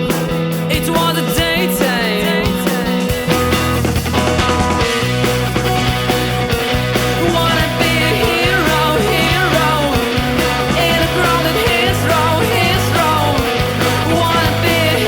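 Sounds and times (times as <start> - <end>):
person singing: 0.0 - 3.4, 7.0 - 15.0
rock music with bass line: 0.0 - 15.0.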